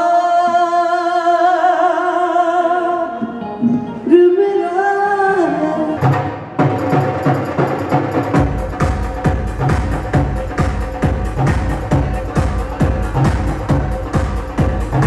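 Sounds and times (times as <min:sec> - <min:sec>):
live band with driving drum beat: 0:05.9 - 0:15.0.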